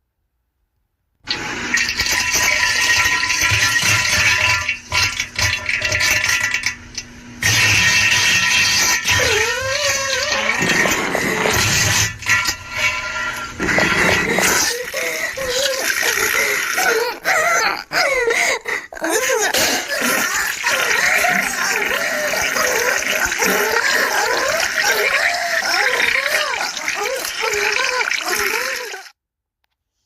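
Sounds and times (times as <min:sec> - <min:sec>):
wet farting and splattering: 0:01.3 - 0:29.1
moaning voice: 0:09.2 - 0:11.6, 0:13.7 - 0:29.1.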